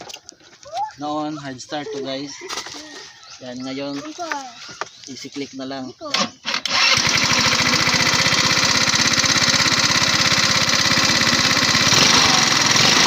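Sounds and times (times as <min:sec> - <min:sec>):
scooter engine idling: 0:06.7 - 0:13.0.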